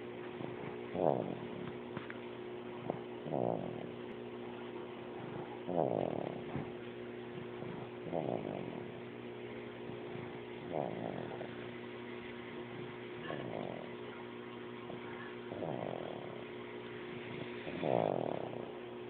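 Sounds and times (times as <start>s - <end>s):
steady low hum: 0.0s - 19.0s
rasping snore: 0.3s - 1.8s, 2.7s - 4.0s, 5.1s - 6.8s, 7.4s - 9.1s, 9.8s - 11.7s, 12.8s - 14.0s, 14.8s - 18.8s.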